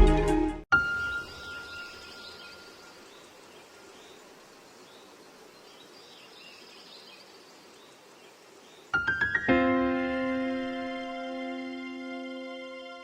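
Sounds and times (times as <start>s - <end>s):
soft bird chirps: 0.8s - 9.0s
steady low hiss: 0.8s - 13.0s.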